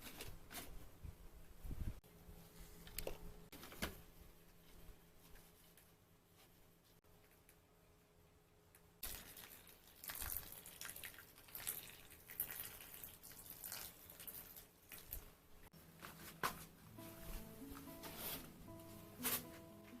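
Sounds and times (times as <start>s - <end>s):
background music: 16.8s - 20.0s.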